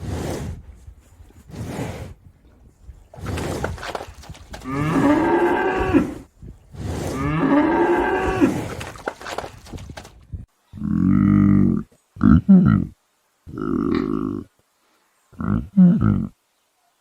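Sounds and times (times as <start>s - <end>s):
cow mooing: 4.6s - 6.2s, 7.1s - 8.7s.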